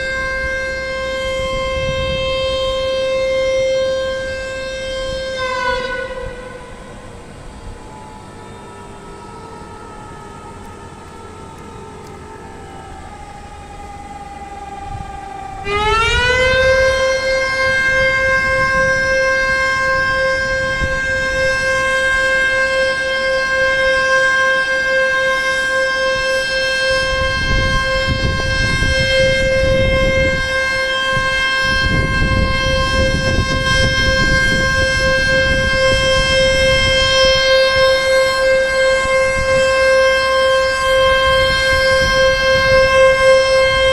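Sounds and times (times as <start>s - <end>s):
faint siren sliding down: 0.0s - 43.9s
loud siren wail: 0.0s - 43.9s.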